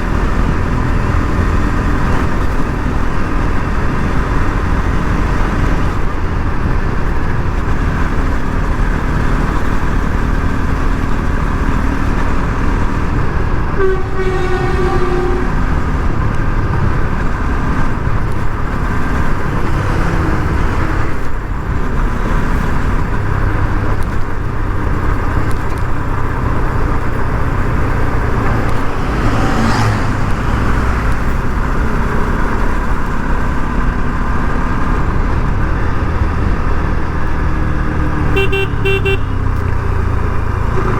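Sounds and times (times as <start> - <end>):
motorcycle engine and road noise: 0.0 - 40.9
vehicle horn honking: 13.7 - 15.9, 38.3 - 39.7.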